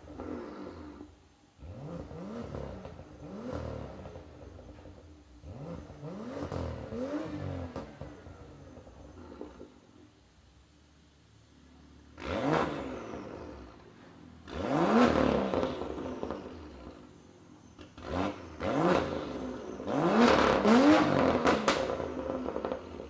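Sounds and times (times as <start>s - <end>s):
car engine revving: 0.0s - 9.8s, 12.0s - 23.0s
exhaust cracks: 17.8s - 23.0s.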